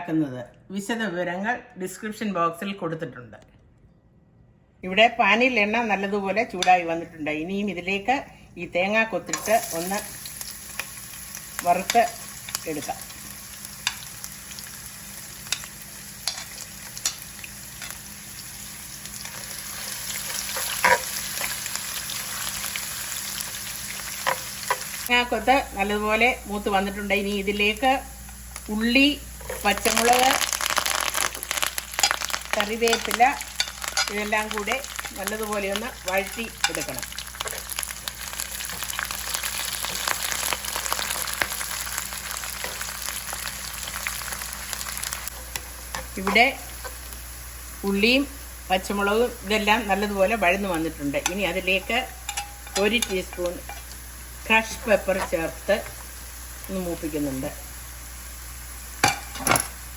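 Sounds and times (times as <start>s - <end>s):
coconut sizzling in oil: 9.0s - 59.9s
oil crackling and popping: 29.6s - 47.3s.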